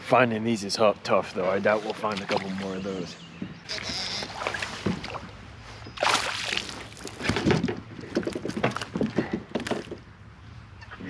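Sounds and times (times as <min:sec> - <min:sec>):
water splashing against kayak: 0:01.6 - 0:02.9, 0:03.6 - 0:09.9.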